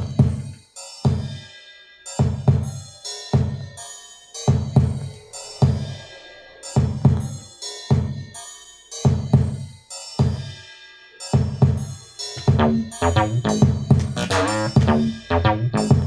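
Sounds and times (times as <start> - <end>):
electronic drum beat: 11.4 - 16.0.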